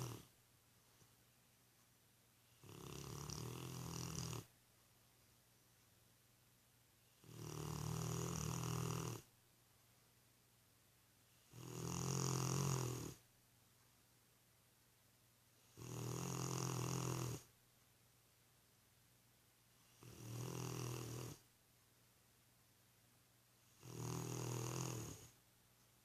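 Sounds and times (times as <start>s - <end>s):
dog snoring: 0.0s - 0.3s, 2.5s - 4.5s, 7.1s - 9.3s, 11.4s - 13.2s, 15.6s - 17.5s, 19.8s - 21.4s, 23.6s - 25.4s.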